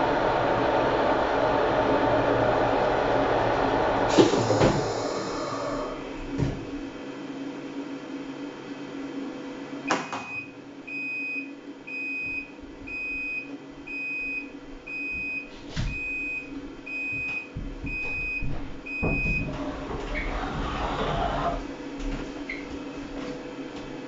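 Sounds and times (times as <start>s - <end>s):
low steady hum: 0.0s - 7.0s
washing machine beeps: 9.9s - 20.2s.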